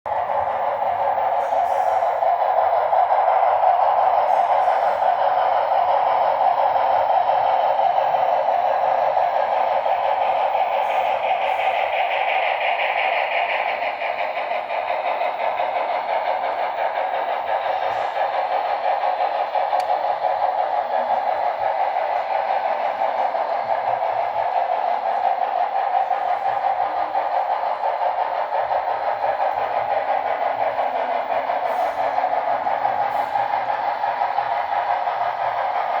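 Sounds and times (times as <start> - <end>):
model train running on track: 0.1 - 36.0.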